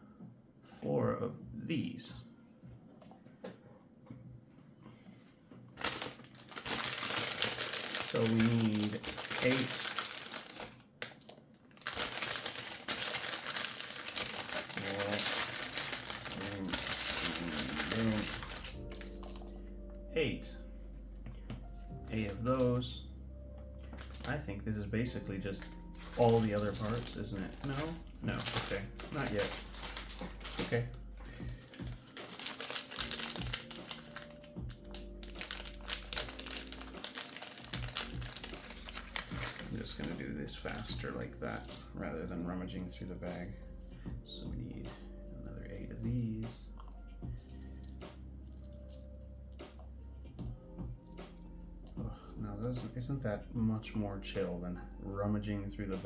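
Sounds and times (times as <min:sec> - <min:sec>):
plastic bricks rattling: 0:05.8 - 0:19.0, 0:26.0 - 0:40.0
plastic bag crinkling: 0:05.8 - 0:19.4, 0:25.5 - 0:41.6
background music: 0:05.8 - 0:56.0.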